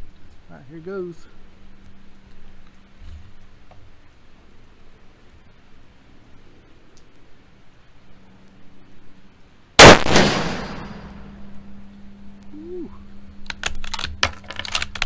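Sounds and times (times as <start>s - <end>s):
rifle shot: 9.8s - 11.4s.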